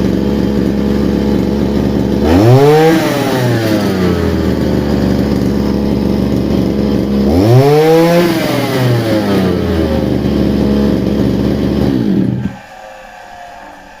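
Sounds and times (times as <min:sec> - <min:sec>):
brush cutter engine idling and revving: 0:00.0 - 0:12.6.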